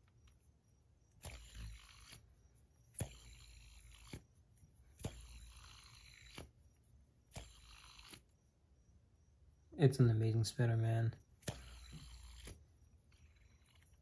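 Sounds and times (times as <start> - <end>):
fidget spinner bearing whir: 0.0 - 8.5, 11.2 - 14.0
fidget spinner clicks: 1.1 - 2.3, 2.9 - 4.3, 4.9 - 6.6, 7.3 - 8.4, 11.4 - 14.0.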